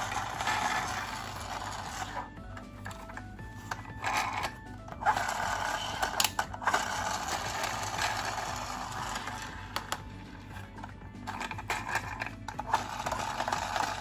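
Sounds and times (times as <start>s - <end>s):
toy car mechanical whirring: 0.0s - 14.0s.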